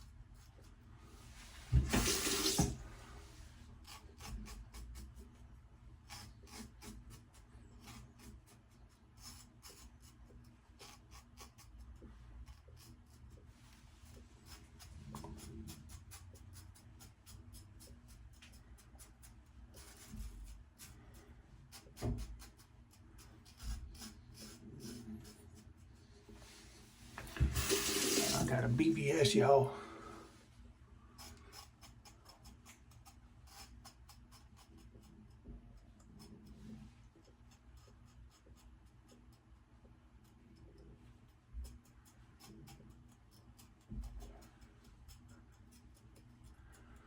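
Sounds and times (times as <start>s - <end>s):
running tap water: 1.7s - 2.8s, 27.2s - 29.4s.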